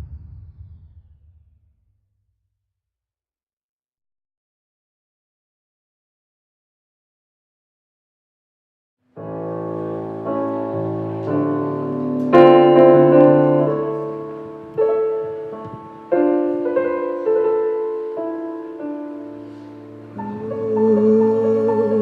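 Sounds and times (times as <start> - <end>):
slow piano chords: 9.2 - 22.0.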